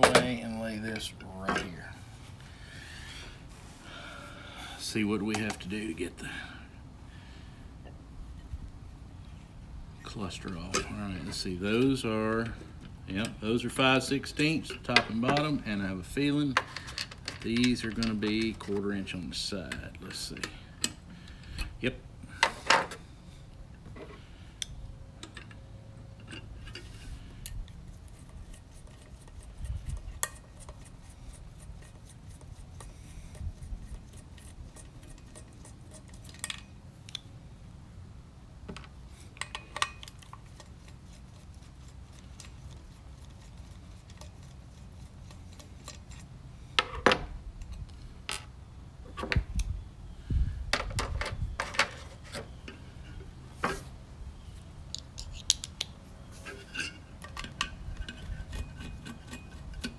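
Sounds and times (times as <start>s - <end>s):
metal parts clicking and clinking: 16.5s - 19.0s, 34.4s - 37.2s, 38.8s - 41.4s, 54.9s - 59.9s.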